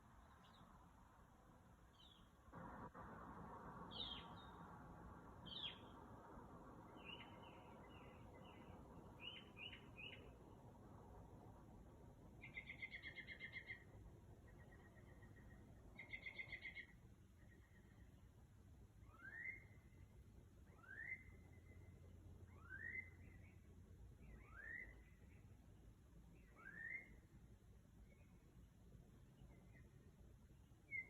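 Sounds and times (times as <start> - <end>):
low background hiss: 0.0 - 31.0
bird singing: 0.2 - 0.8, 1.9 - 2.8, 3.8 - 4.8, 5.4 - 10.5, 12.4 - 18.3, 19.0 - 27.3, 29.2 - 31.0.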